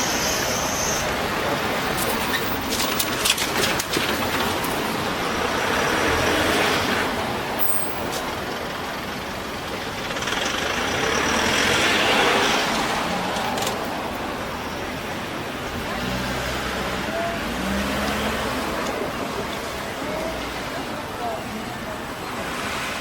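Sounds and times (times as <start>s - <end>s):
vehicles passing: 0.0s - 23.0s
tyres clacking over rails: 1.2s - 8.9s, 12.3s - 15.8s.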